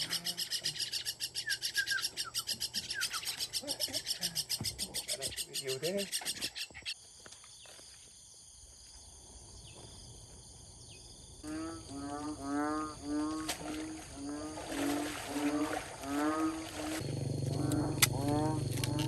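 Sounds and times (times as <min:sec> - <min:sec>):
animal calling: 0:00.0 - 0:07.0, 0:14.8 - 0:19.0.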